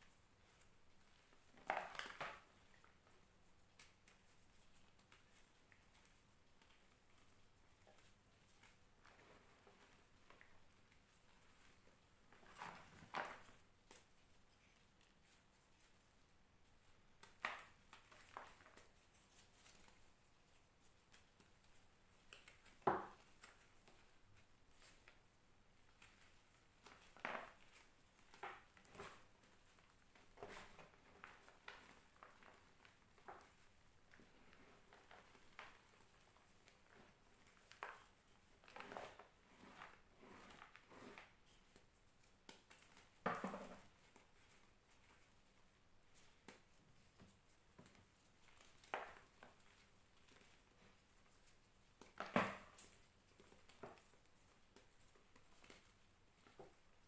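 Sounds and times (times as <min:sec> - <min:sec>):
chalk crunching and crumbling: 0:26.8 - 0:42.4.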